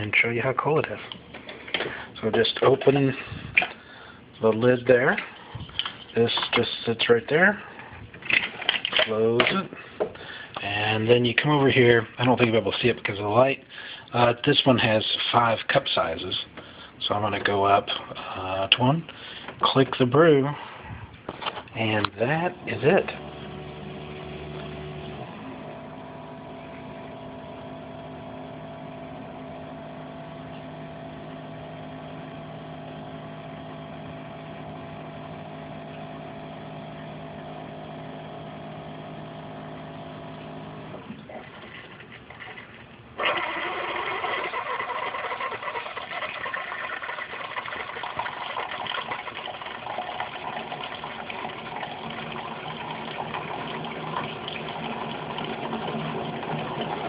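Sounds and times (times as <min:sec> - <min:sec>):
coffee maker humming: 0:00.0 - 0:12.0, 0:21.8 - 0:57.0
water rushing through coffee maker: 0:21.8 - 0:57.0.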